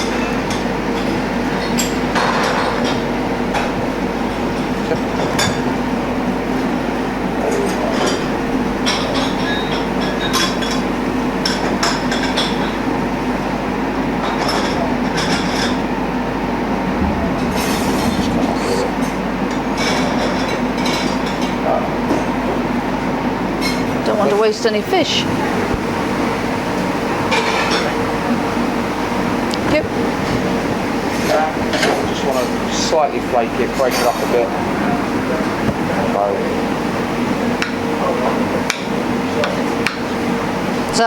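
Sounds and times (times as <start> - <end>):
utensils clinking on a plate: 0.0 - 6.4, 7.4 - 12.8, 14.2 - 15.8, 17.5 - 22.3, 27.2 - 28.0, 31.1 - 36.2
kitchen ventilation hum: 0.0 - 41.0.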